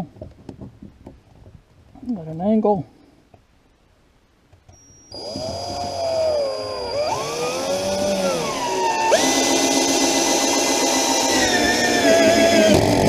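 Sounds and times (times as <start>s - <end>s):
drill-driver motor whining: 4.7s - 13.0s.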